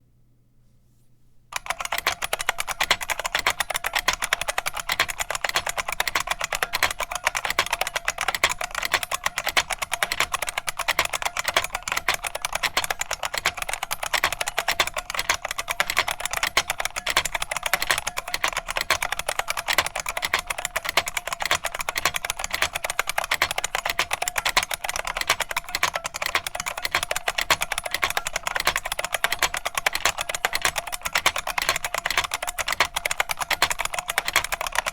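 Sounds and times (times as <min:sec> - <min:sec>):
fast typing on clicky keyboard: 0:01.6 - 0:34.9.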